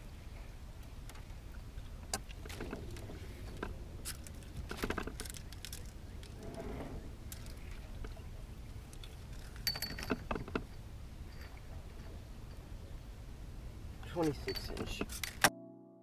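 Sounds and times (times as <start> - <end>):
low steady rumble: 0.0 - 14.7
handling clicks and knocks: 2.1 - 6.4, 14.0 - 15.5.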